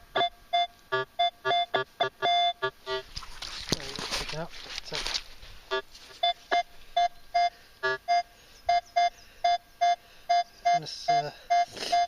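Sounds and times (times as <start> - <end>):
metal detector beeps: 0.1 - 3.1, 5.7 - 12.0.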